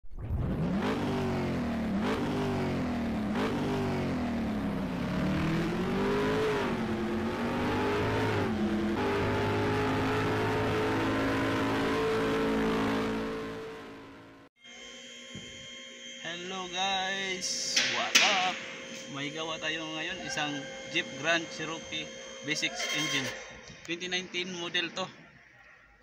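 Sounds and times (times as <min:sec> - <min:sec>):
car engine revving: 0:00.2 - 0:14.5, 0:17.4 - 0:23.6.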